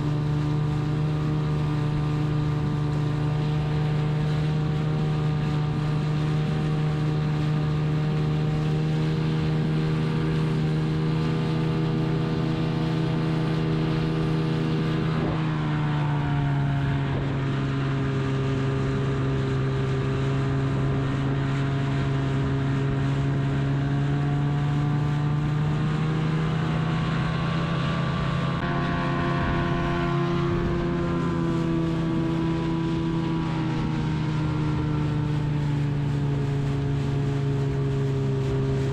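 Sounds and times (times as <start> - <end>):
boat motor running: 0.0 - 38.9
wind on microphone: 25.6 - 38.9.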